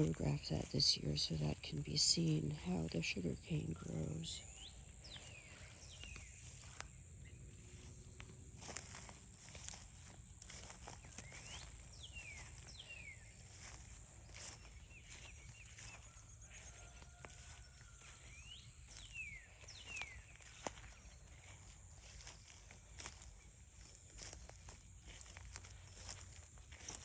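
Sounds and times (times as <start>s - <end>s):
footsteps: 7.6s - 27.0s.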